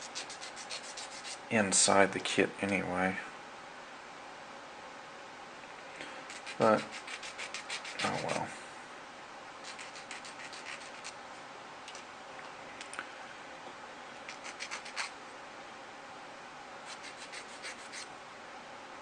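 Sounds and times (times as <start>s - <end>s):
file rasping on plastic: 0.0s - 1.4s, 6.3s - 8.4s, 9.6s - 11.1s, 14.3s - 15.1s, 16.9s - 18.1s.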